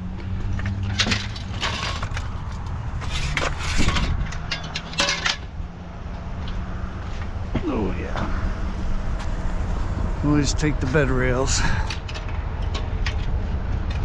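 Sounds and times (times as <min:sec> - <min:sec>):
scrap clattering in a dumpster: 0:00.7 - 0:05.6.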